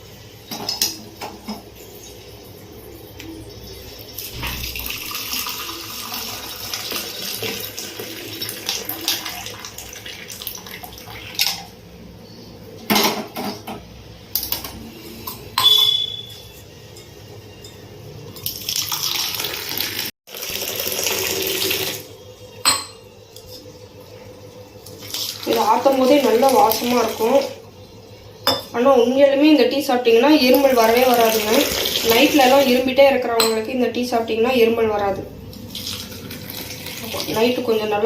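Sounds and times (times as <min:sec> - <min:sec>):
spoon clinking vessels: 0:15.3 - 0:18.5, 0:22.6 - 0:23.6, 0:33.4 - 0:33.8.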